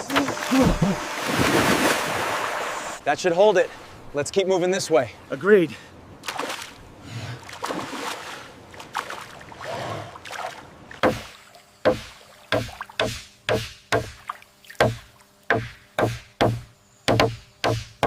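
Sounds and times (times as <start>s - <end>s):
faint steady hum: 0.0s - 18.0s
sharp knocks on bamboo: 11.0s - 18.0s.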